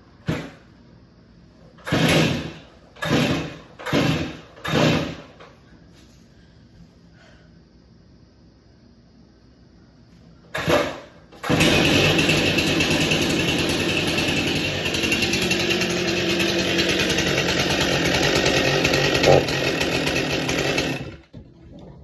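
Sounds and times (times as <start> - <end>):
chainsaw starting and idling: 1.8 - 5.5, 10.6 - 21.3.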